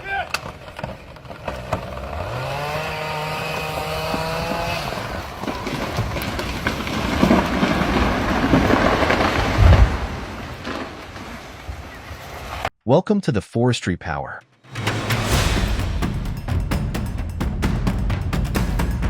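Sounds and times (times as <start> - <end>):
engine revving: 1.2 - 5.9
rushing crash: 4.6 - 12.7, 14.7 - 19.0.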